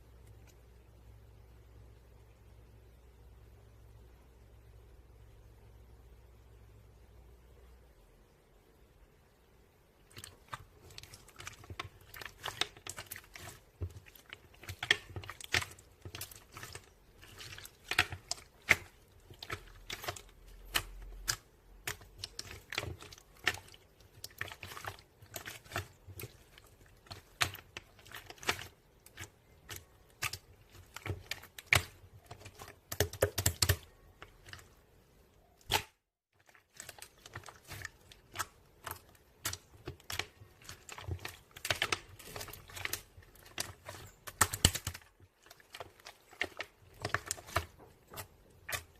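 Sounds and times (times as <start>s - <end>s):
crunchy slime crackling: 10.1s - 34.8s, 35.6s - 48.9s.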